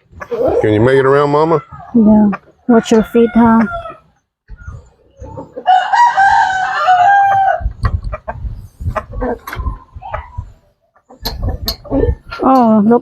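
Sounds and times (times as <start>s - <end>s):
rooster crowing: 2.8s - 4.1s, 5.6s - 7.7s.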